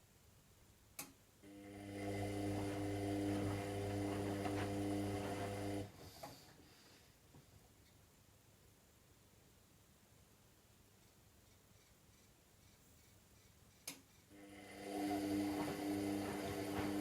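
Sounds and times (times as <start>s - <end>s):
drain pump humming: 1.4s - 6.0s, 14.3s - 17.0s.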